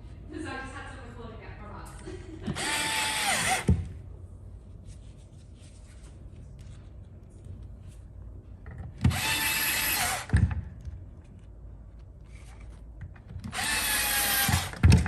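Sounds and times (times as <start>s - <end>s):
electric screwdriver driving screws: 2.5s - 3.8s, 9.0s - 10.5s, 13.4s - 15.0s.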